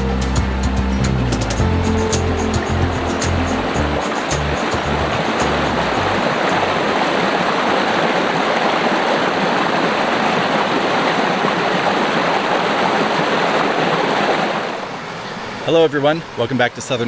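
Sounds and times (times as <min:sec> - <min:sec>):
music: 0:00.0 - 0:06.8
creek water rushing: 0:00.0 - 0:16.5.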